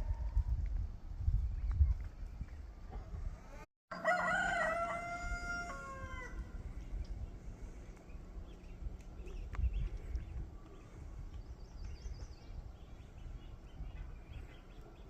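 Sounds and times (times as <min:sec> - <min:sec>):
rooster crowing: 0:03.9 - 0:06.5.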